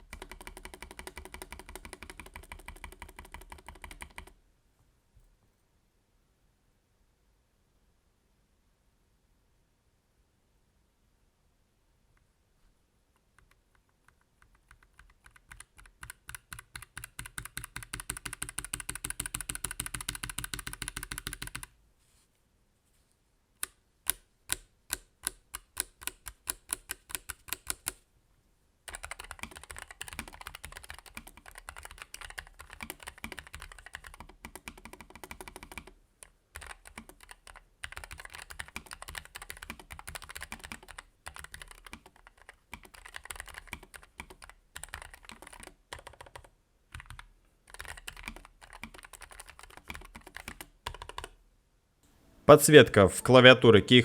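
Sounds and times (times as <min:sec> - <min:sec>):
mechanical keyboard typing: 0:00.0 - 0:04.4, 0:13.4 - 0:21.7, 0:23.6 - 0:28.0, 0:28.9 - 0:51.4.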